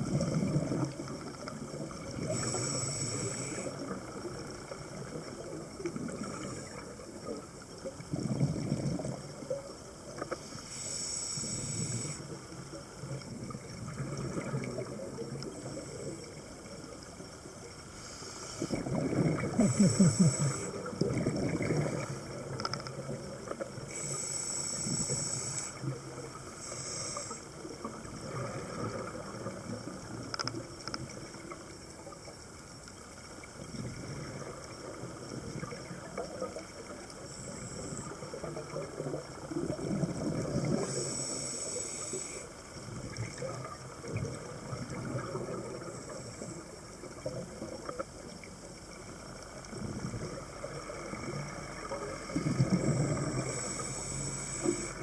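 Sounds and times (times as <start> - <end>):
hissing regulator inhalations: 2.2 - 3.8, 10.4 - 12.4, 17.9 - 20.8, 23.9 - 25.9, 26.5 - 27.6, 40.7 - 42.6, 52.4 - 55.0
bubbling exhalations: 18.7 - 22.1.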